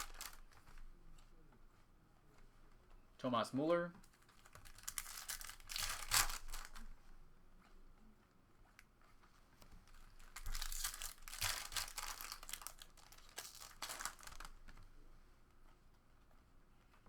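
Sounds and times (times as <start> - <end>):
foil wrapper tearing and crinkling: 0.0 - 0.7, 4.2 - 6.8, 10.2 - 14.7.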